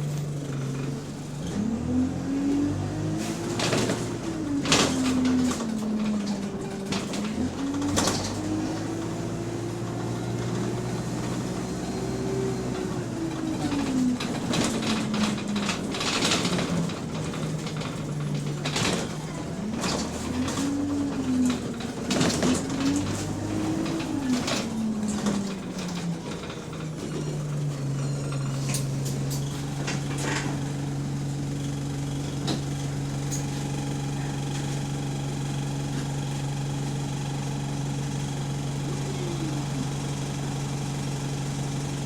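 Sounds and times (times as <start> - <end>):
bus drivetrain droning: 0.0 - 42.0
knocks and rattles: 3.5 - 9.4, 12.8 - 33.6.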